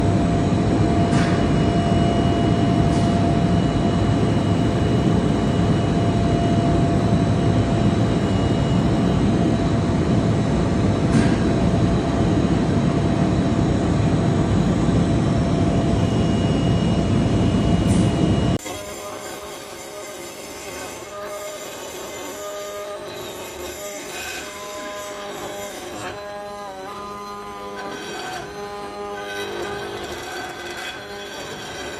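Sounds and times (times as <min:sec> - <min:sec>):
machinery roaring with high whine: 0:00.0 - 0:19.3.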